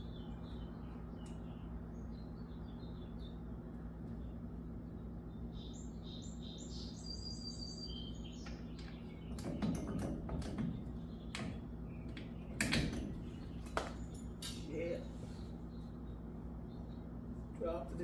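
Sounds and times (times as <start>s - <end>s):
birds chirping: 0.0s - 18.0s
steady low hum: 0.0s - 18.0s.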